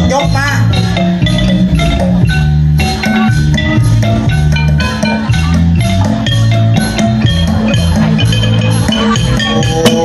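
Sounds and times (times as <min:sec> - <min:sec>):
bright struck melody: 0:00.0 - 0:10.0
steady beat: 0:00.0 - 0:10.0
stepping bass line: 0:00.0 - 0:10.0.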